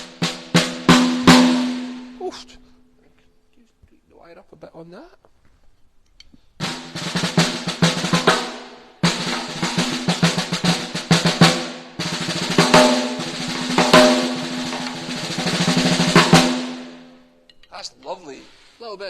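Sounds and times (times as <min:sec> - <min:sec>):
snare drum strokes: 0:00.0 - 0:02.6, 0:06.6 - 0:17.2.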